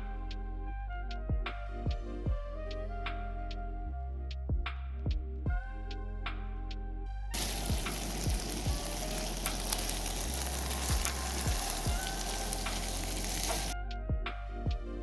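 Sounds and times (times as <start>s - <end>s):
loud crackling hiss: 7.4s - 13.8s
background music with low thumps: 9.6s - 15.0s.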